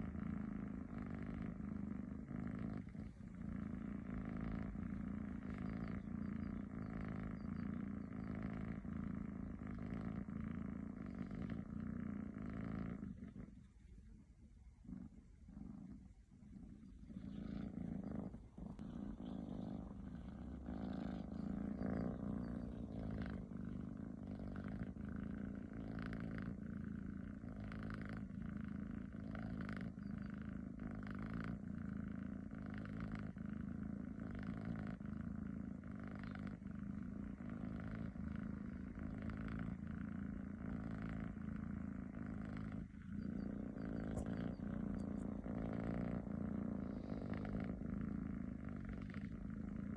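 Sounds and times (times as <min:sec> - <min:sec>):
cat snoring: 0:00.0 - 0:49.9.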